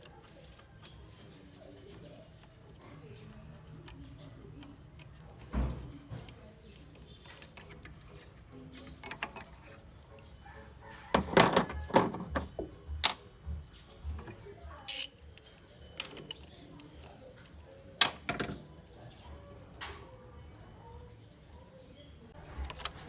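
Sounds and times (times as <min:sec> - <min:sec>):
metal tools knocking and clicking: 0:07.2 - 0:10.0, 0:11.1 - 0:13.2, 0:14.2 - 0:18.6.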